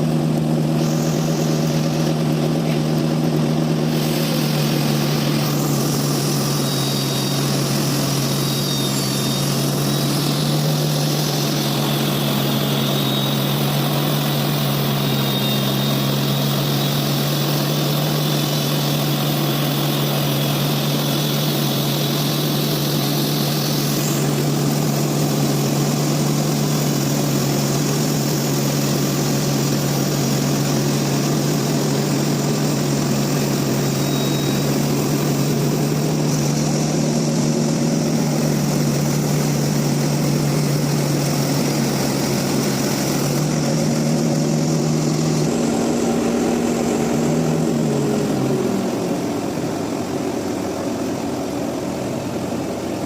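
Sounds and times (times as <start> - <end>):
sawmill machinery drone: 0.0 - 53.0.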